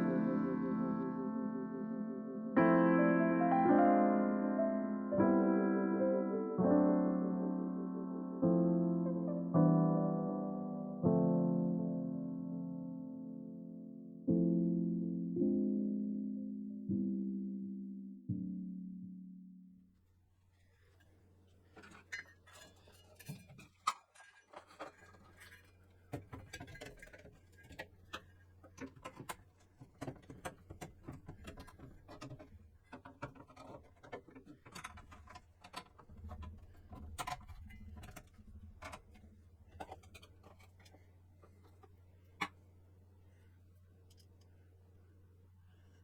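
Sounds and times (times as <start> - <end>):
clicks and taps of computer parts: 26.1 - 41.0.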